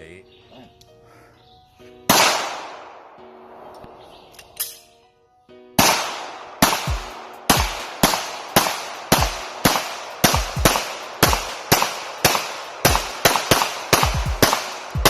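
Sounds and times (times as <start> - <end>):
rapid gunshots with echo: 2.1 - 3.2, 5.8 - 15.0.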